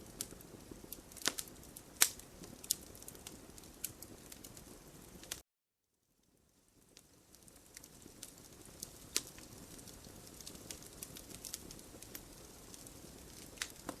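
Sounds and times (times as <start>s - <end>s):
low rumble of flame: 0.0s - 5.4s, 6.2s - 14.0s
wood fire crackling and popping: 0.0s - 5.4s, 6.2s - 14.0s.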